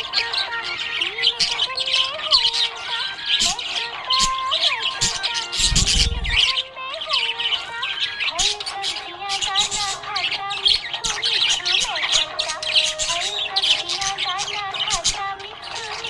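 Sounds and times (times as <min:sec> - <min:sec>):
budgies chirping and squawking: 0:00.0 - 0:16.0
short low rumble: 0:05.6 - 0:06.5.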